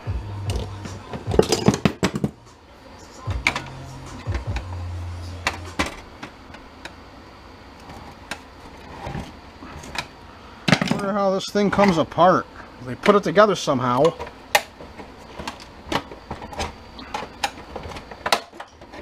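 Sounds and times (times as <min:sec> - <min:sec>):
low hum: 0:00.0 - 0:19.0
plastic printer parts clicking and rattling: 0:14.0 - 0:19.0.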